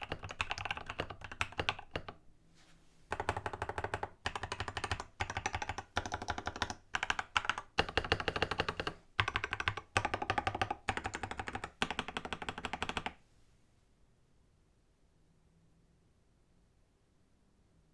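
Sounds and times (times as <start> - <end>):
mechanical keyboard typing: 0.0 - 2.2, 3.1 - 13.2.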